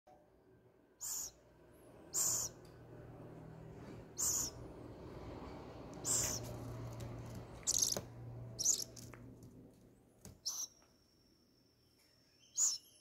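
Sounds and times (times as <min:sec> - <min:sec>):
owl chicks hissing screeches: 0:01.0 - 0:01.4, 0:02.1 - 0:02.6, 0:04.0 - 0:04.7, 0:06.0 - 0:06.6, 0:07.7 - 0:08.0, 0:08.6 - 0:08.9, 0:10.4 - 0:10.7, 0:12.6 - 0:12.8.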